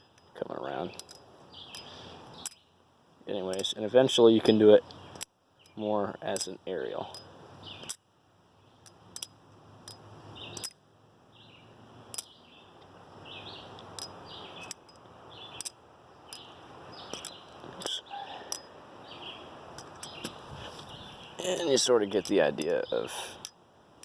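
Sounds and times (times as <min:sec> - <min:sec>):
birds chirping faintly: 0:00.0 - 0:24.0
butterfly knife clacking: 0:08.8 - 0:10.8, 0:13.8 - 0:15.0.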